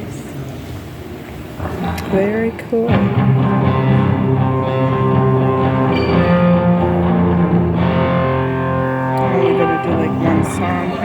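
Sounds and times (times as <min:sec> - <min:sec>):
electric guitar chords: 0:02.9 - 0:11.0.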